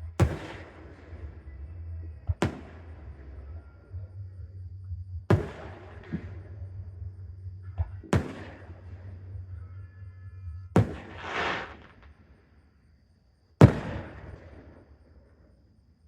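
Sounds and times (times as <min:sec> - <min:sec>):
fireworks bangs: 0:00.0 - 0:03.6, 0:05.3 - 0:06.8, 0:07.8 - 0:09.6, 0:10.8 - 0:12.4, 0:13.6 - 0:15.0
firework hiss: 0:10.8 - 0:12.2.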